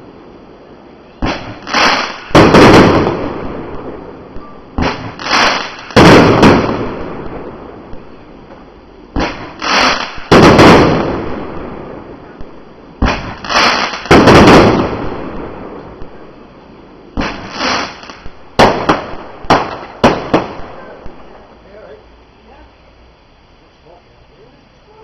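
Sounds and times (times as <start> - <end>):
fireworks bangs: 1.0 - 21.6
sharp firework cracks: 1.1 - 21.4
rumble after bangs: 1.2 - 5.2, 5.8 - 9.6, 10.2 - 17.5.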